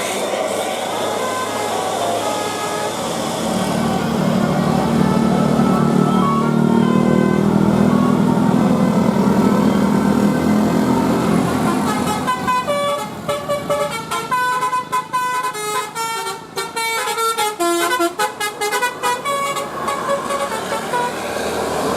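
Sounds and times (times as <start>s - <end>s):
engine running: 0.0s - 14.2s
bus horn playing a fast melody: 1.0s - 10.2s, 10.9s - 21.5s.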